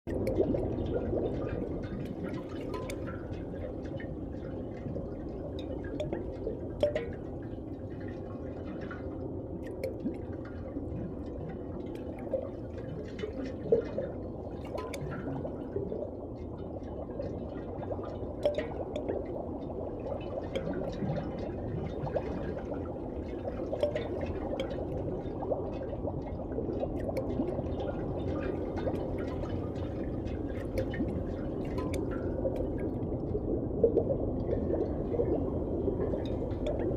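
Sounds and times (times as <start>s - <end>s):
muffled watery wash: 0.0s - 36.9s
small pops and drips: 0.1s - 36.9s.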